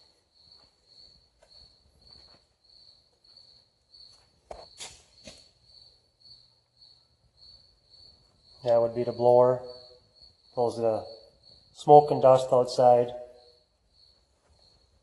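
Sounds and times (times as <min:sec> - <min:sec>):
cricket chirping: 0:00.0 - 0:15.0.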